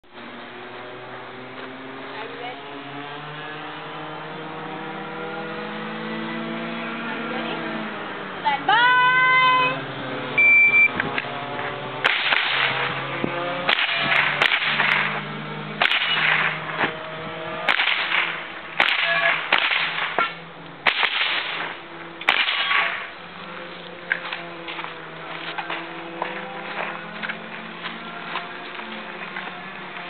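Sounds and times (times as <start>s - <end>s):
shot timer beep: 10.4s - 11.0s
rifle shots: 12.0s - 13.0s, 13.7s - 15.2s, 15.8s - 16.7s, 17.6s - 23.1s.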